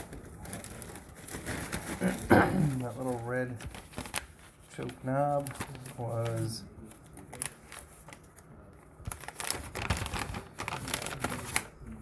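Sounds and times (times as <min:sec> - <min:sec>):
packaging crinkling: 0:02.8 - 0:12.0.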